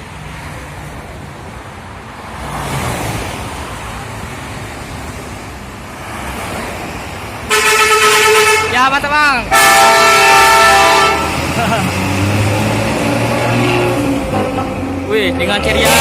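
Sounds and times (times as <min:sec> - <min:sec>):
bus engine rumble passing: 0:00.0 - 0:16.0
highway traffic: 0:00.0 - 0:16.0
bus horn blowing: 0:07.5 - 0:08.9, 0:09.5 - 0:11.5, 0:13.4 - 0:14.1.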